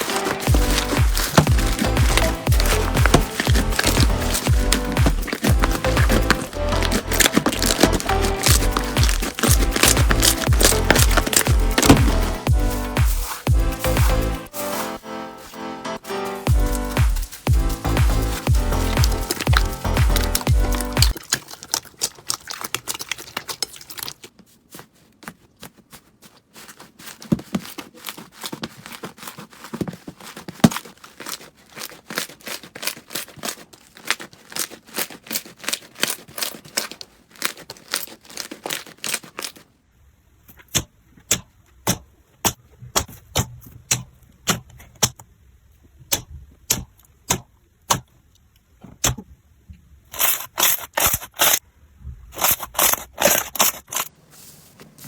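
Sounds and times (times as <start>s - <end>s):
slime crackling and popping: 0.0s - 14.4s, 16.7s - 24.4s, 26.6s - 39.8s.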